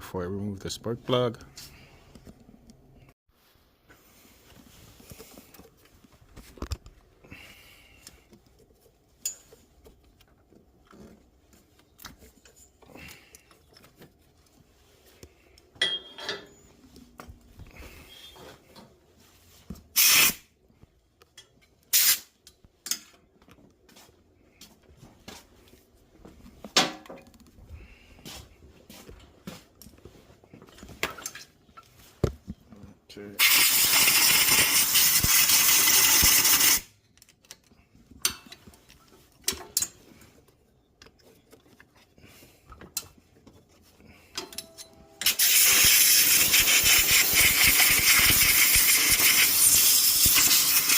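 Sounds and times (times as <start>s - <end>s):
tools clicking and clattering: 8.0s - 14.6s, 15.5s - 17.2s, 21.2s - 23.7s, 30.6s - 31.9s, 36.9s - 42.1s, 42.7s - 45.9s
compressed air blasts: 19.9s - 20.5s, 21.9s - 22.3s, 33.4s - 36.9s, 45.2s - 50.9s.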